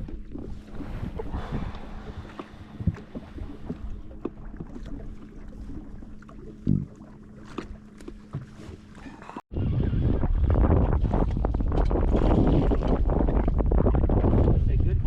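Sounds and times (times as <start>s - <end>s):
low rumble: 0.0s - 7.2s
wind buffeting microphone: 9.5s - 15.0s.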